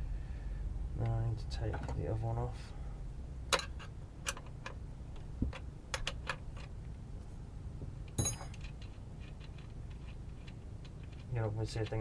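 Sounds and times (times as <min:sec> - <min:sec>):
ringing metallic clink: 0:08.2 - 0:08.6.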